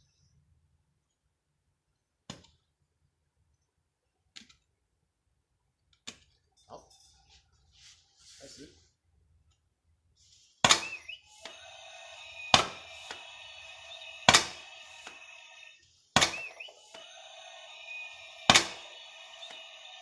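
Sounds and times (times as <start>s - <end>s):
toy air gun pops: 10.6s - 15.4s, 16.1s - 20.0s.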